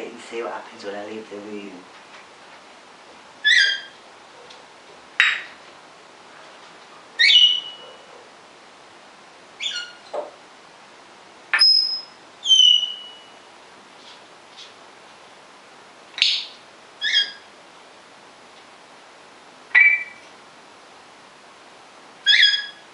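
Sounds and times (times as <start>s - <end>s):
parrot whistling and calling: 3.4s - 4.0s, 7.2s - 8.0s, 9.6s - 10.0s, 11.6s - 13.4s, 16.2s - 17.5s, 19.7s - 20.2s, 22.2s - 22.8s.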